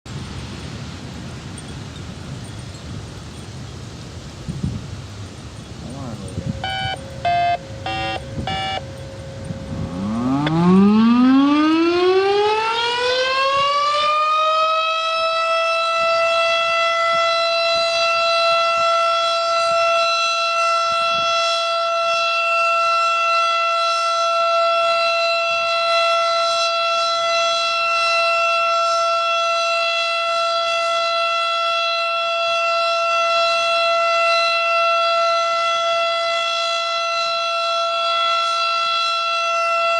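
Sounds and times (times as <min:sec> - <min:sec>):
short radio activation tones: 0:06.1 - 0:09.0
warning siren winding up: 0:06.2 - 0:30.5.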